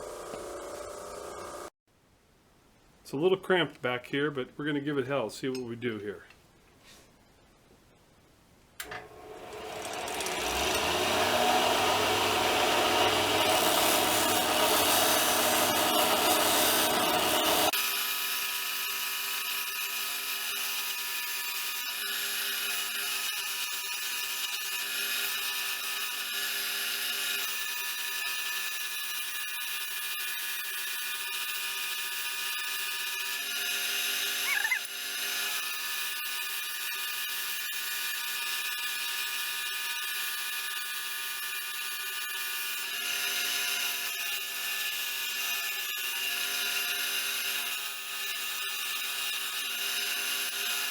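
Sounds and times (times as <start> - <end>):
grinding machine running: 0.0 - 1.7, 9.0 - 17.7.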